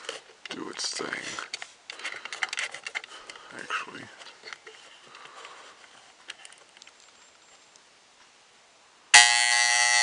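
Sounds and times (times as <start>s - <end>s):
faint clicks: 4.2s - 8.3s
alarm clock buzzer: 9.2s - 10.0s.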